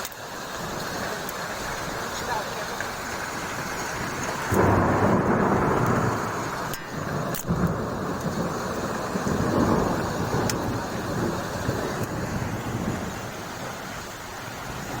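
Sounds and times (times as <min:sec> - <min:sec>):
heavy rain: 0:00.0 - 0:15.0
thunder rumbling: 0:03.6 - 0:15.0.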